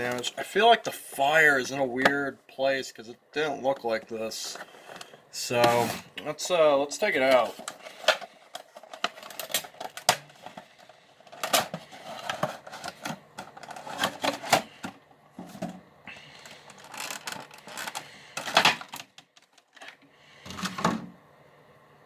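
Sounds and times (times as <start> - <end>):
cardboard box and plastic crinkling: 7.0 - 15.8, 16.4 - 20.0
plastic clatter: 7.2 - 21.2.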